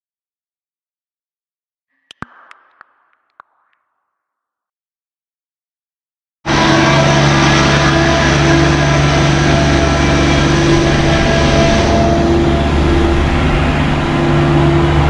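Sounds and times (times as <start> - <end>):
vehicle engine running: 6.5 - 15.0.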